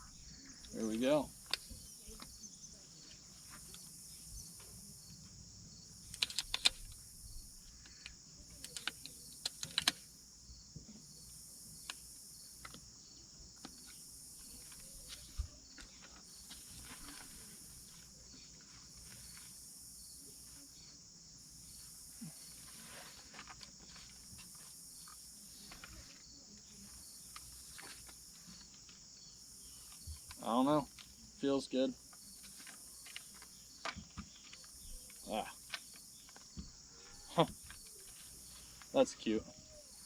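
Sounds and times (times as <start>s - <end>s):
insects buzzing: 0.0s - 40.0s
light clicks and taps on rifle: 1.4s - 2.3s, 6.0s - 10.0s, 32.2s - 36.6s.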